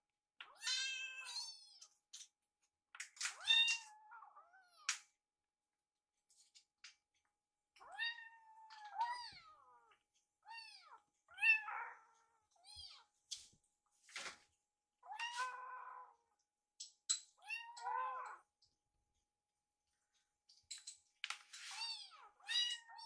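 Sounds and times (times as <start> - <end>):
kittens meowing: 17.4 - 18.5.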